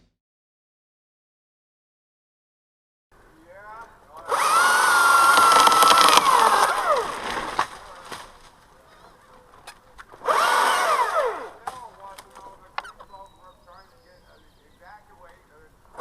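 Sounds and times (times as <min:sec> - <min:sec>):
chainsaw revving: 0:04.2 - 0:07.9, 0:10.1 - 0:11.8.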